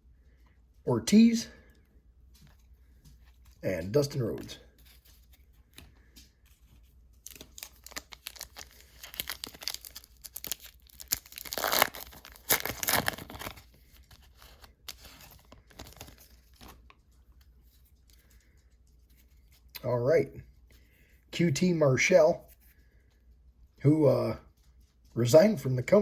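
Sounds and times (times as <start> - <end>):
foil wrapper tearing and crinkling: 7.2 - 16.9.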